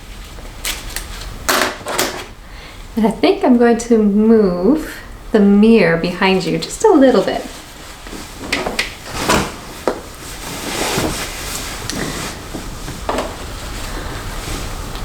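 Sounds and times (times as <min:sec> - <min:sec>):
mirror knocking and clattering: 0:08.2 - 0:11.5, 0:12.5 - 0:13.5.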